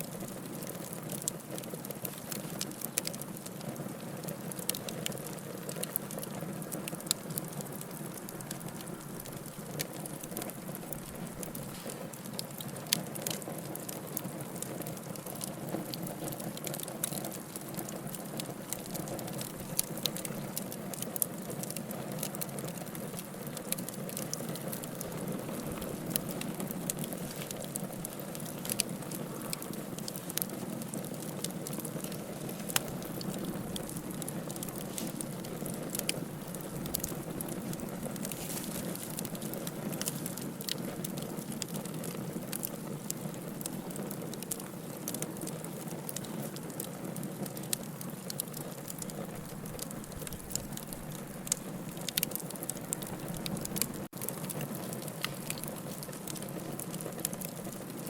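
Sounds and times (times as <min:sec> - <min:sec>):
fire crackling and popping: 0:00.0 - 0:58.0
fire flame rushing: 0:23.7 - 0:42.1.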